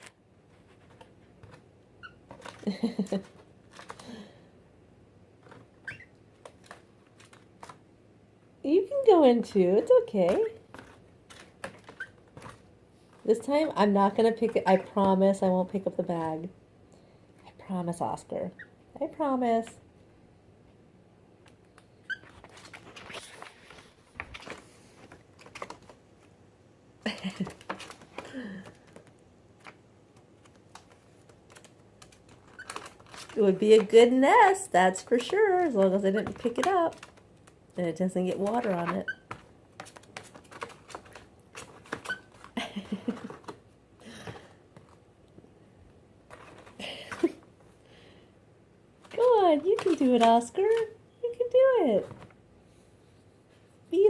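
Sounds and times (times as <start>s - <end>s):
bird feet tapping and scraping: 0.0s - 4.2s, 5.4s - 7.8s, 9.0s - 15.5s, 21.4s - 26.4s, 27.4s - 43.6s, 46.2s - 47.4s, 49.0s - 51.0s
birds clicking on paper bag: 2.3s - 4.4s, 30.4s - 34.0s, 35.0s - 37.6s
paper bag crinkling: 30.4s - 34.0s.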